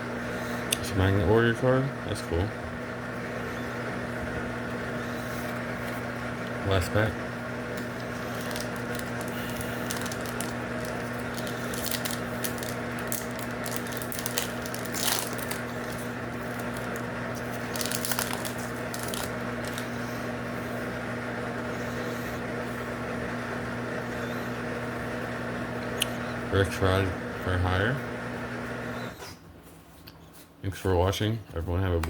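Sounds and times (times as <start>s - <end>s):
low electrical hum: 0.0s - 32.0s
foil pack crinkling: 7.7s - 20.1s.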